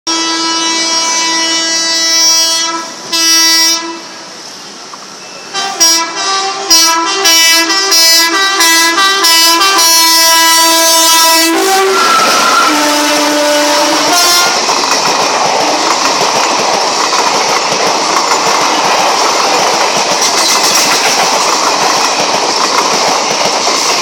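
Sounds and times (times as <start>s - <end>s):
locomotive air horn blasts: 0.1s - 4.1s, 5.5s - 14.7s.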